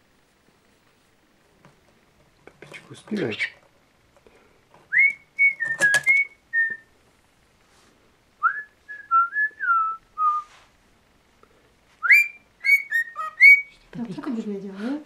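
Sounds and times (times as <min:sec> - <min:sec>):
cockatiel whistling a tune: 0:04.9 - 0:06.9, 0:12.0 - 0:13.8.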